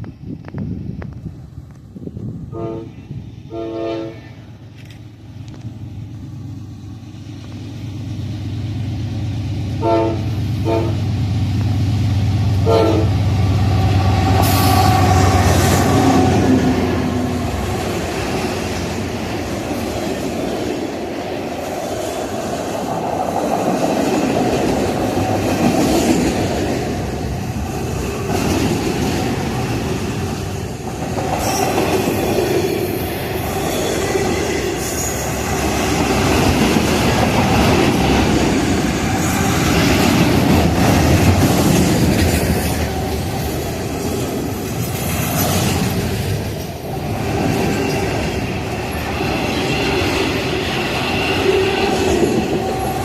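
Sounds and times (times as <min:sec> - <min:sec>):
train horn blasts: 0:02.5 - 0:04.6, 0:09.8 - 0:11.1, 0:12.5 - 0:17.6
train wheels rumbling and clattering: 0:04.5 - 0:53.0.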